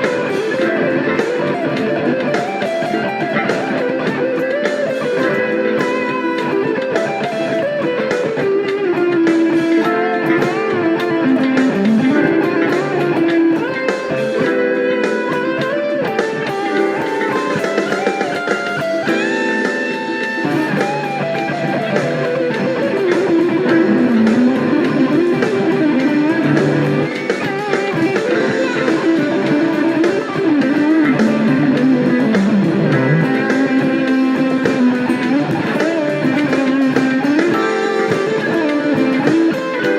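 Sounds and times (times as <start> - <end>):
fuzz electric guitar lead: 0.0 - 39.9.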